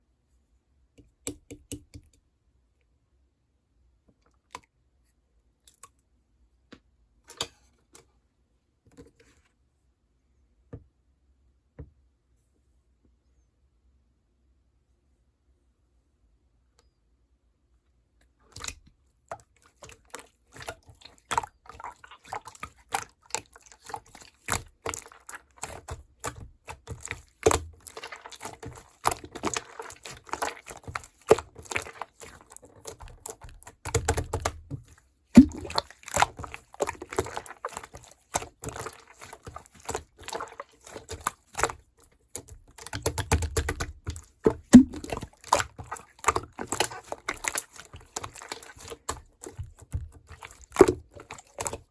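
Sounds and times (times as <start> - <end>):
milk liquid sounds: 18.4 - 51.9.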